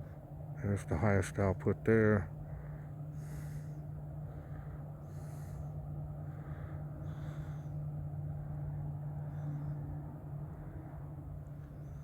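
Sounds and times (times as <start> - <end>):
steady low hum: 0.0 - 12.0
person breathing: 2.4 - 10.4.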